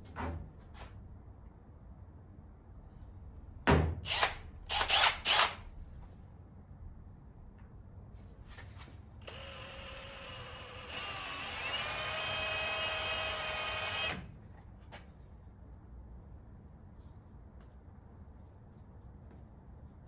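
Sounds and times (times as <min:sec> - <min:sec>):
power drill drilling metal: 0:04.1 - 0:05.6, 0:09.2 - 0:14.3.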